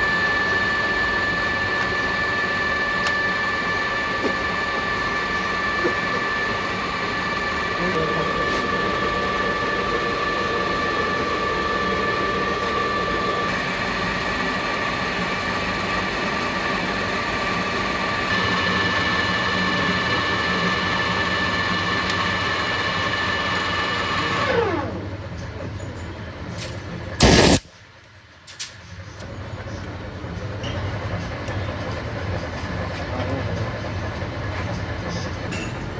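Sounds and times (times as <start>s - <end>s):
metal lathe whining: 0.0s - 25.1s.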